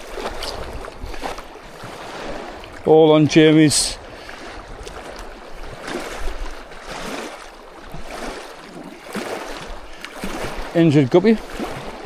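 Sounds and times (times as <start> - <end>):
small waves lapping and splashing: 0.0 - 12.0.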